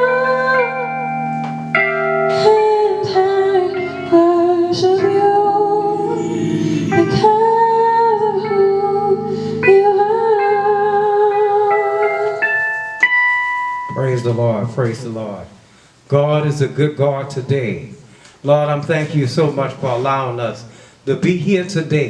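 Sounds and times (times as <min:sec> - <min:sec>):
woman singing: 0:00.0 - 0:01.2, 0:02.3 - 0:12.7
instrumental accompaniment: 0:00.0 - 0:15.5.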